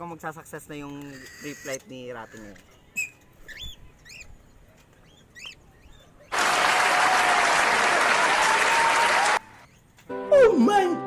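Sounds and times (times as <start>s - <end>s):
high chirping calls: 2.8s - 6.4s
applause: 6.3s - 9.5s.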